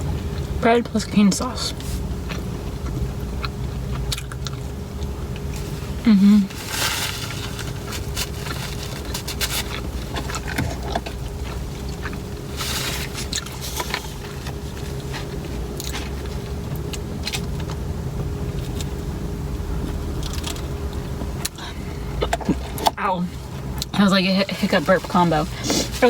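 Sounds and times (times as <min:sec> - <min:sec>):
car engine idling hum: 0:00.0 - 0:26.0
chewing and eating: 0:01.7 - 0:17.8.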